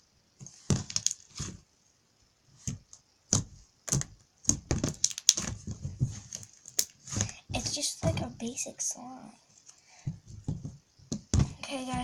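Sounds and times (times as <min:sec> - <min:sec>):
slime squishing clicks and pops: 0:03.9 - 0:05.5.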